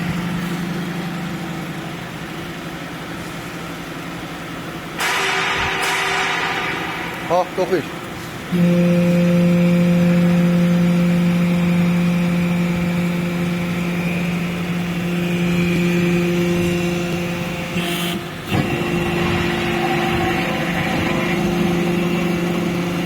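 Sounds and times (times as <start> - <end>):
hydraulic power unit humming: 0.0 - 23.0.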